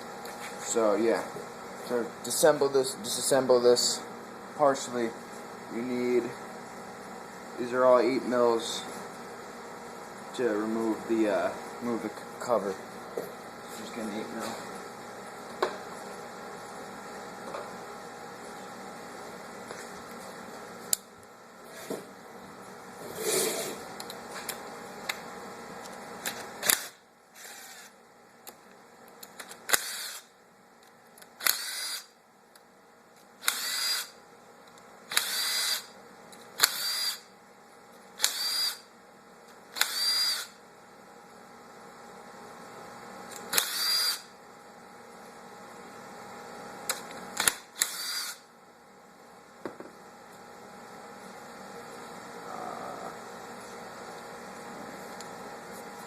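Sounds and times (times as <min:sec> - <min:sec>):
power driver whirring: 0:29.5 - 0:30.3, 0:31.2 - 0:32.1, 0:33.4 - 0:34.2, 0:35.1 - 0:35.9, 0:36.6 - 0:37.3, 0:38.2 - 0:38.8, 0:39.8 - 0:40.6, 0:43.3 - 0:44.3, 0:46.9 - 0:48.4.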